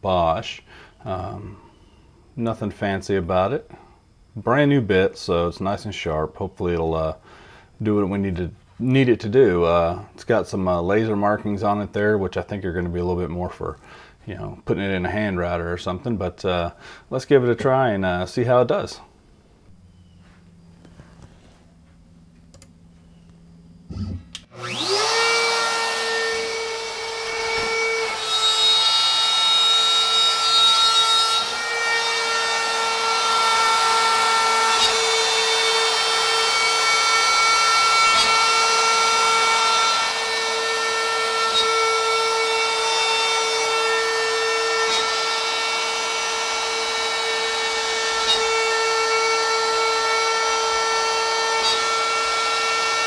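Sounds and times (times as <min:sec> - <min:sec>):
router spinning with high whine: 0:24.4 - 0:53.0.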